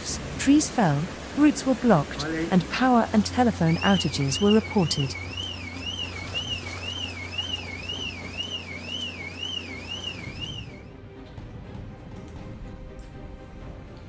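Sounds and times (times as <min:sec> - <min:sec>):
steady low hum: 0:00.0 - 0:14.0
car alarm sweeping tone: 0:03.6 - 0:10.9.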